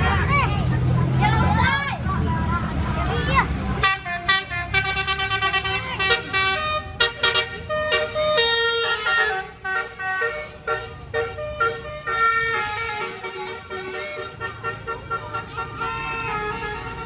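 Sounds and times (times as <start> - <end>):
bus engine rumbling: 0.0 - 17.0
multi-tone bus horn melody: 3.8 - 17.0.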